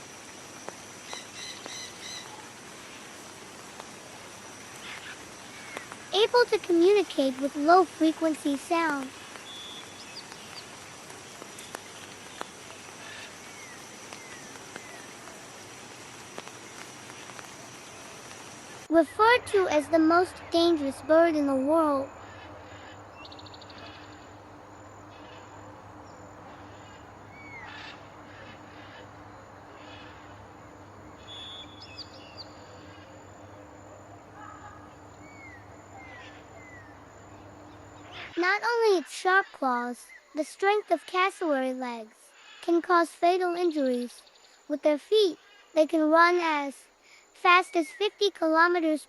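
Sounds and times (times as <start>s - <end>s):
outdoor background noise: 0.0s - 49.0s
steady hiss: 0.0s - 49.0s
birds whistling: 1.1s - 2.5s, 9.1s - 10.8s, 31.2s - 38.4s
high bird chirps: 9.4s - 10.7s.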